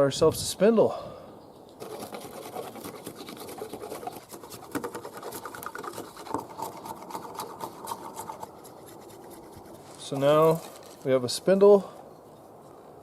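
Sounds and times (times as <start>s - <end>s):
scratchy scraping on wooden stick: 1.8s - 11.1s.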